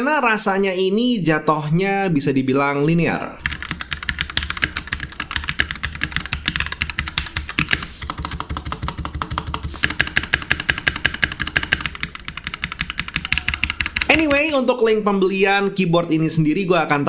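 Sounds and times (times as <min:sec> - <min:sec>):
mechanical keyboard typing: 0:03.4 - 0:14.6.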